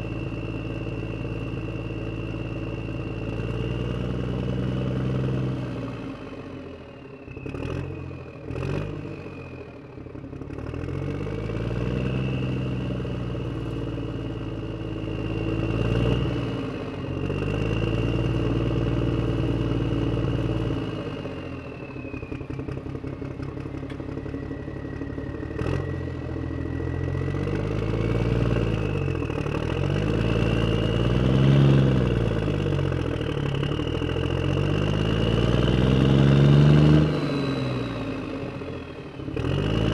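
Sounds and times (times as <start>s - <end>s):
engine revving: 7.3s - 9.6s, 10.4s - 23.2s, 25.0s - 39.9s
steady high whine: 21.3s - 29.5s.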